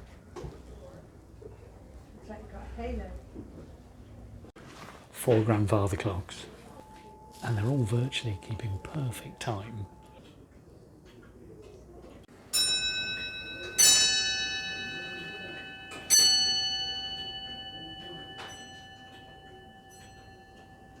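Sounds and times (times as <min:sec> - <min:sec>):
clock bells striking: 0:05.2 - 0:10.4, 0:12.3 - 0:21.0
clocks ticking: 0:05.4 - 0:10.2.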